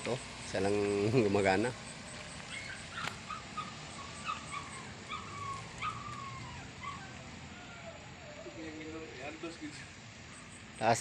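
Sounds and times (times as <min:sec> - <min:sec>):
dog whimpering: 0:02.5 - 0:08.7.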